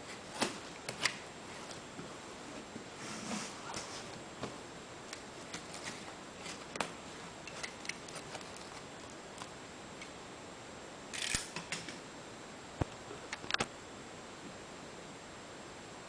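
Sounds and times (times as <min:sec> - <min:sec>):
steady background hiss: 0:00.0 - 0:16.0
packaging rustle: 0:05.3 - 0:09.6.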